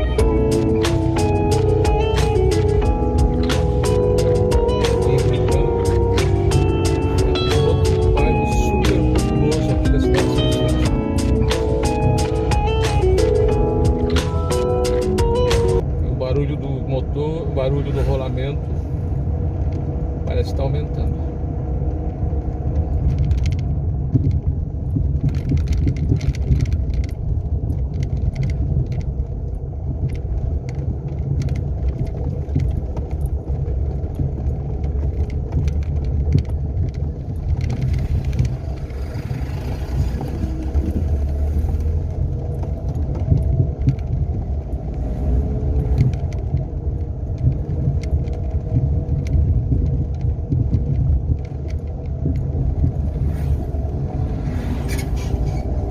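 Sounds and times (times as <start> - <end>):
car engine driving: 0.0 - 55.9
bearing whine: 21.2 - 55.9.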